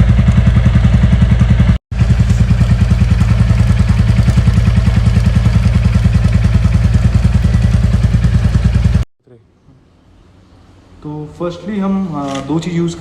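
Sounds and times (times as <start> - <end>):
motorcycle engine idling: 0.0 - 9.0.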